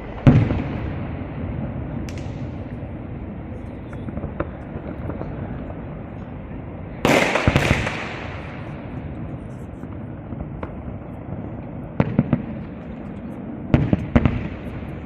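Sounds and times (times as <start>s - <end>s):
firework bang: 0.0s - 2.9s, 7.0s - 9.0s, 9.8s - 15.0s
sharp firework crack: 0.0s - 2.9s, 7.0s - 9.0s
burst of firework explosions: 0.0s - 15.0s
crowd murmur: 0.0s - 15.0s.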